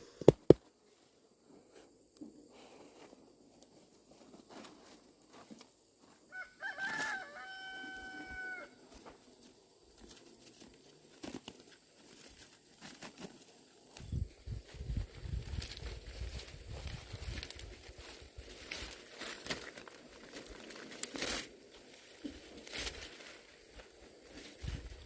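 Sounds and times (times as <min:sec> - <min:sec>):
rooster crowing: 0:06.3 - 0:08.8.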